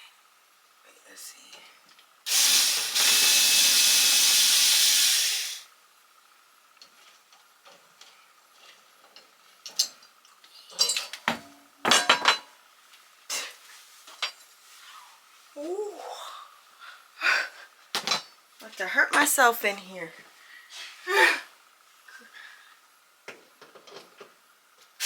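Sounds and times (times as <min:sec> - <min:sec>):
power drill running: 0:02.3 - 0:05.7.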